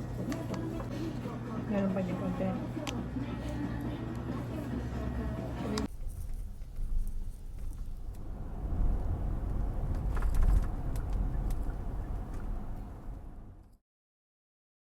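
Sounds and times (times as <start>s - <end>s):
low rumbling background noise: 0.0s - 13.8s.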